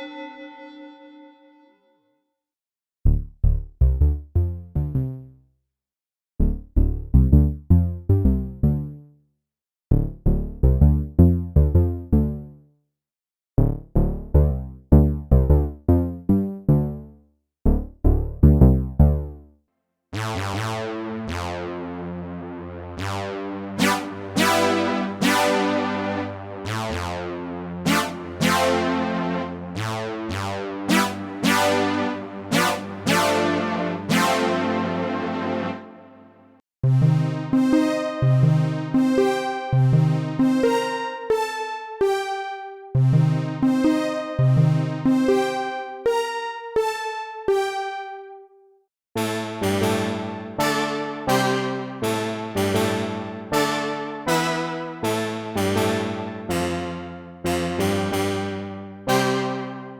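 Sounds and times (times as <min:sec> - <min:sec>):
synthesizer plucked notes: 0:00.0 - 0:01.8, 0:03.1 - 0:05.3, 0:06.4 - 0:07.6, 0:17.7 - 0:19.4, 0:20.2 - 0:42.3
synthesizer sustained chords: 0:00.0 - 0:01.9, 0:20.7 - 0:36.4.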